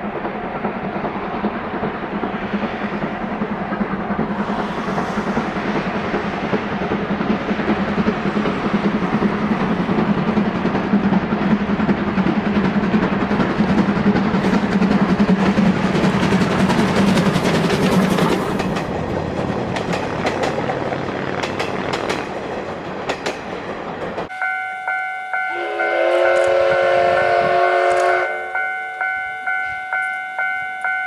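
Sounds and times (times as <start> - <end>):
steam locomotive exhaust chuffs: 0.0 - 24.2
train rolling on track: 0.0 - 31.0
wheels clicking over rail joints: 5.6 - 24.3.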